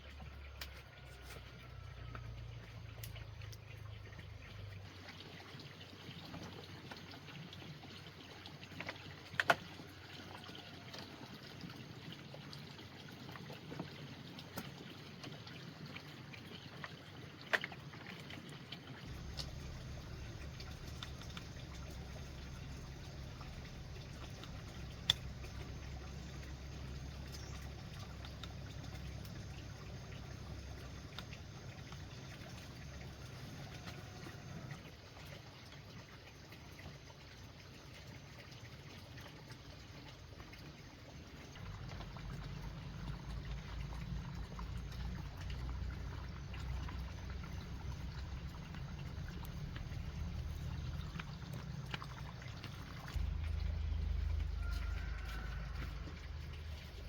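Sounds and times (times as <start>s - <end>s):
trickling water: 0.0s - 57.0s
low hum: 19.1s - 34.9s, 41.6s - 57.0s.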